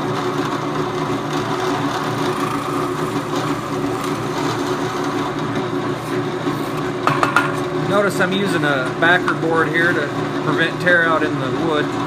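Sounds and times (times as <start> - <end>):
drill press boring wood: 0.7 - 6.8.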